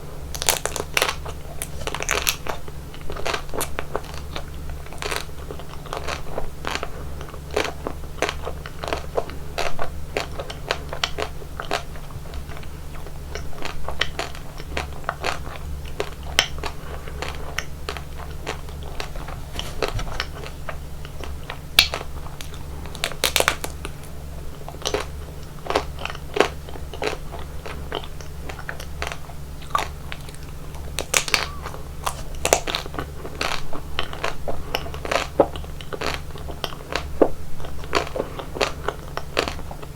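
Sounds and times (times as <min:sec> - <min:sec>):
steady low hum: 0:00.0 - 0:39.9
crunchy bites and chewing: 0:00.2 - 0:39.9
crisp crackles: 0:16.6 - 0:24.2, 0:25.7 - 0:37.1.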